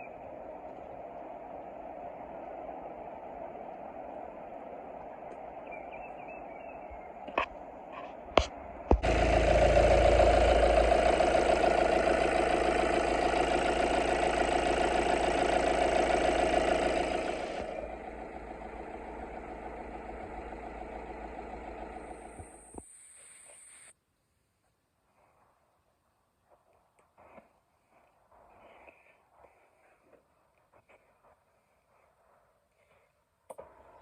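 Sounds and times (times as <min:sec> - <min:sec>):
diesel engine idling: 0:08.9 - 0:22.9.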